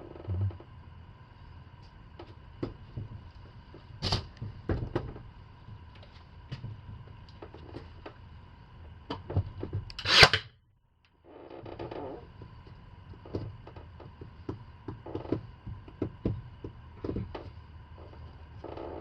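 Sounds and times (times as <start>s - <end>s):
loud scrape: 10.0s - 10.4s.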